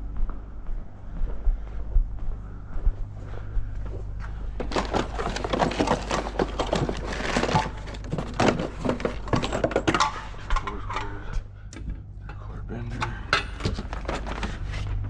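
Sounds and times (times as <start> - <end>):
steady low hum: 0.0 - 15.0
hard objects clattering and rattling: 4.5 - 11.3, 12.9 - 15.0.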